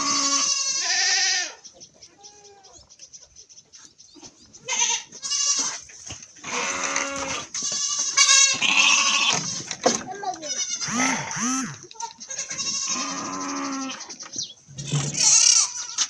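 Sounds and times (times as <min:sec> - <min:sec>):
goats bleating: 0:00.0 - 0:01.6, 0:04.6 - 0:14.1, 0:14.8 - 0:16.0.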